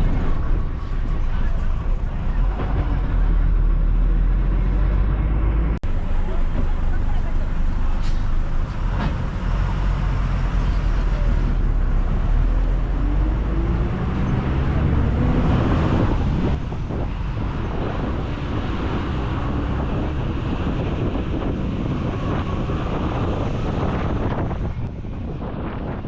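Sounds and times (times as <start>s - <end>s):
bus engine: 0.0s - 26.0s
road noise: 0.0s - 26.0s
wind buffeting microphone: 7.7s - 26.0s.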